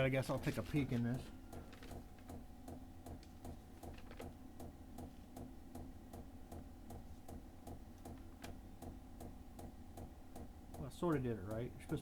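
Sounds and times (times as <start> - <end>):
heater fan hum: 0.0 - 12.0.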